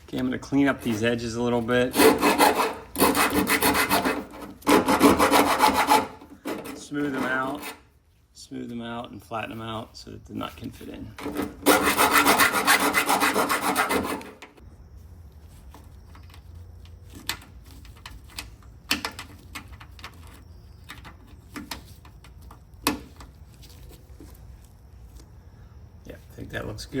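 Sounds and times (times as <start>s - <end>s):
hand file rasping on metal: 1.8s - 7.8s, 11.2s - 14.4s.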